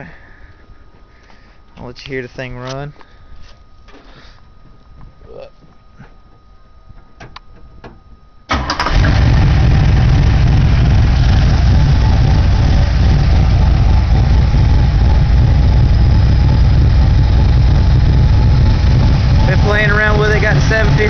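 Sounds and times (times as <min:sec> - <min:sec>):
car engine starting and idling: 0:08.5 - 0:21.0.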